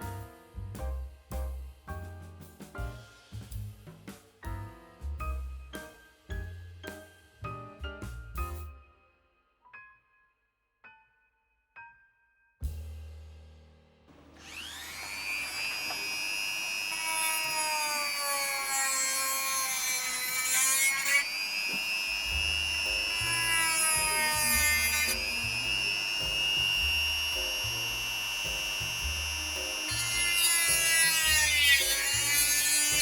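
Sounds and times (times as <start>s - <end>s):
background music with bass: 0.0s - 8.8s, 22.3s - 33.0s
rotary tool motor whine: 14.4s - 33.0s
disc cutting plastic hiss: 21.2s - 24.4s, 25.1s - 29.0s.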